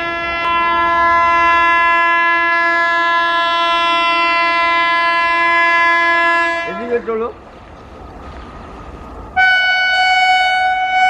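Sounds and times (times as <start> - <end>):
locomotive air horn chord: 0.0 - 7.1, 9.4 - 11.0.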